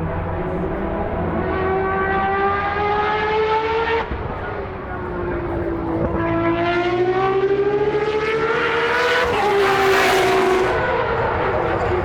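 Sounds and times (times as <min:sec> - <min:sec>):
race car accelerating: 0:00.0 - 0:12.0.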